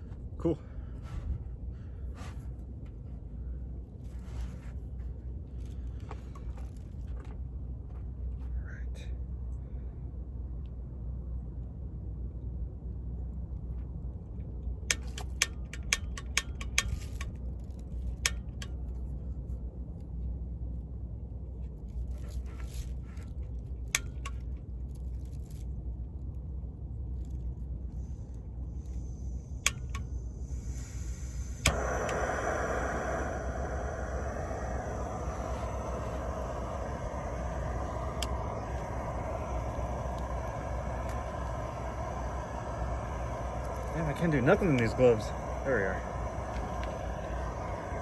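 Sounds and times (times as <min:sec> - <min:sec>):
gas stove burner hissing: 0:14.9 - 0:17.3, 0:28.0 - 0:48.0
low rumble: 0:28.7 - 0:48.0.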